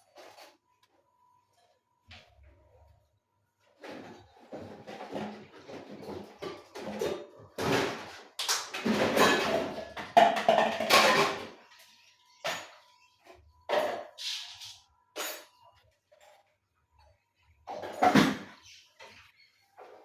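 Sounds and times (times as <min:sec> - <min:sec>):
kitchenware clattering and knocking: 0:03.8 - 0:13.0, 0:13.7 - 0:14.2, 0:17.6 - 0:19.2.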